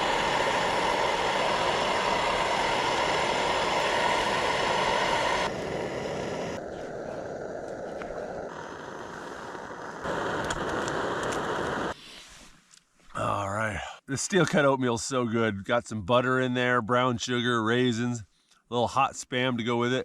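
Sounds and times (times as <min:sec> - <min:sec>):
camp stove burner roaring: 0:00.0 - 0:12.0.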